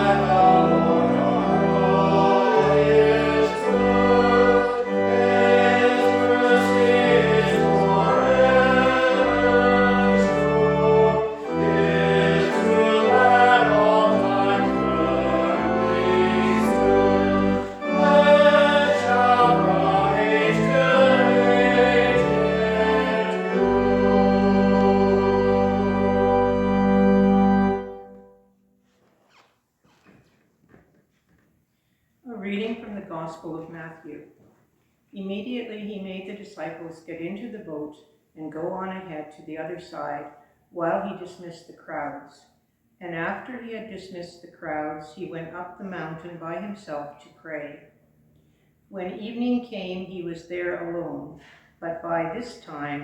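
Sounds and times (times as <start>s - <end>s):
choir singing a hymn: 0.0s - 28.1s
organ playing: 0.0s - 28.6s.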